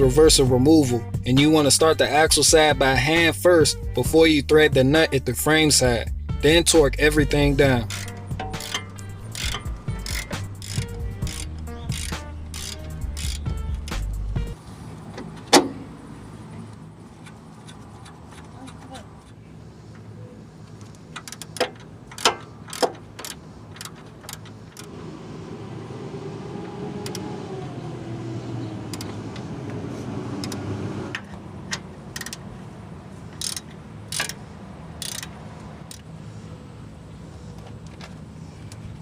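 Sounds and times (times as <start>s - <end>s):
hand tools clanking on steel: 7.6s - 14.2s, 21.0s - 24.9s.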